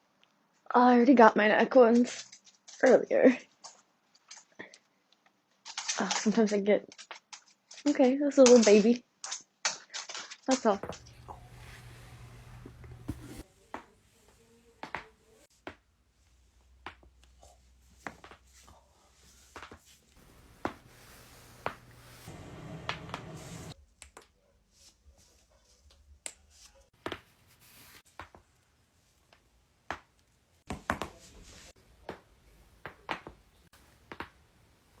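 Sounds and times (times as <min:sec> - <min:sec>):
steady noise: 0:21.6 - 0:23.8.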